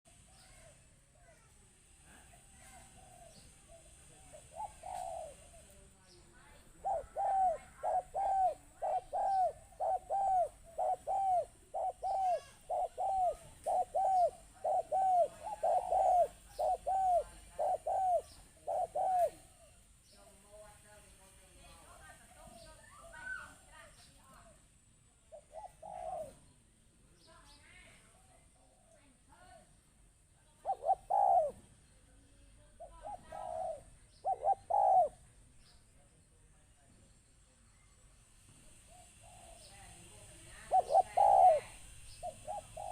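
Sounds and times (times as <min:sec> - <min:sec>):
dove cooing: 0:02.1 - 0:19.8, 0:25.3 - 0:26.5, 0:30.5 - 0:31.8, 0:32.8 - 0:35.3, 0:38.7 - 0:42.9.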